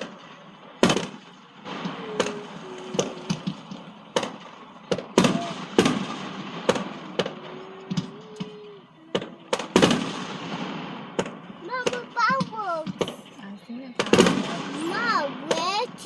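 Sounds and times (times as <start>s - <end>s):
fireworks banging: 0.0s - 16.0s.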